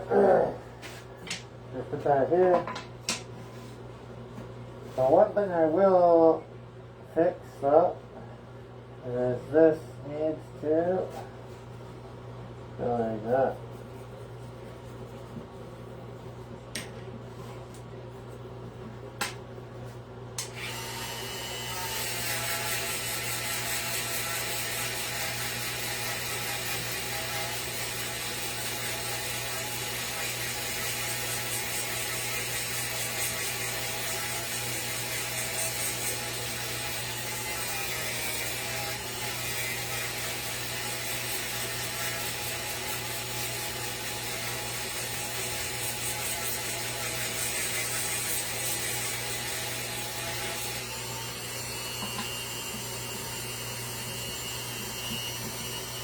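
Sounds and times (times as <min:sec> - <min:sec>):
rotary tool whining on wood: 0:20.4 - 0:56.0.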